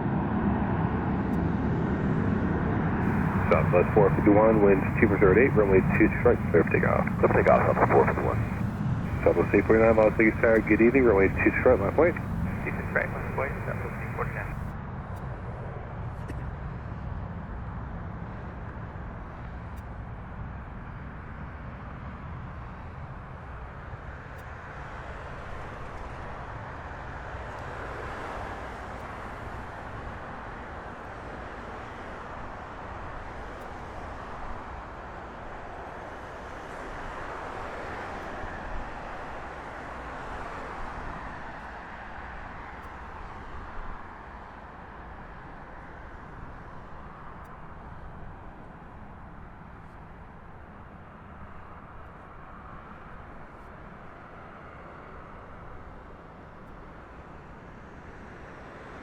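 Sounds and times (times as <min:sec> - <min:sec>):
distant jet engines roaring: 0:00.0 - 0:14.7.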